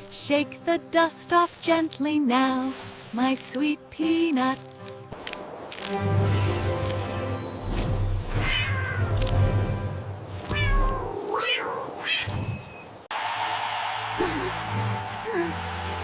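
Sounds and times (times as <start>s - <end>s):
background music: 0.0s - 10.3s, 13.2s - 16.0s
cat meowing: 8.4s - 9.2s, 10.5s - 12.4s.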